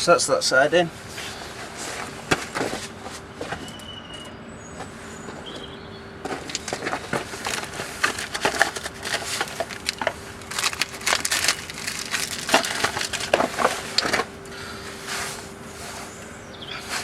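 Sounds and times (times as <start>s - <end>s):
faint steady hum: 0.0s - 17.0s
tools clicking and scraping: 6.3s - 14.3s.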